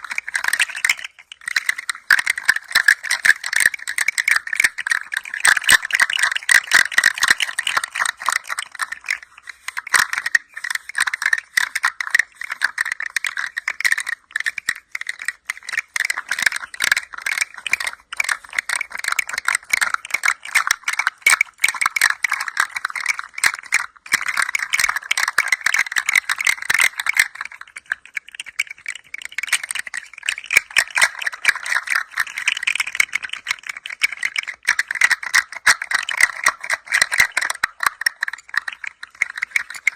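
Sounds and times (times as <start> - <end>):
rattling toy clicks: 0.0 - 39.9.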